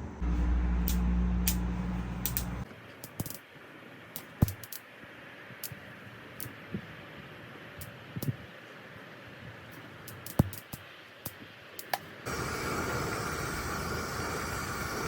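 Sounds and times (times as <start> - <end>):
steady low hum: 0.0 - 2.7.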